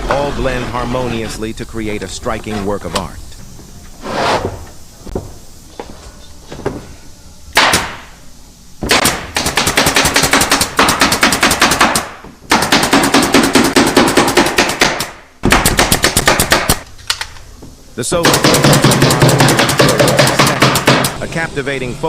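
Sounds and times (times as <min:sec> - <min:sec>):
pneumatic staple gun firing: 0:18.3 - 0:21.2.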